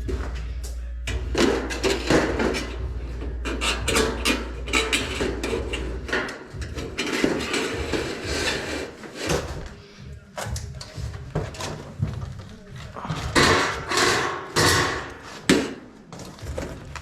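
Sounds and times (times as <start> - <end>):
metal studs clanking: 0.0 - 9.6, 13.2 - 17.0.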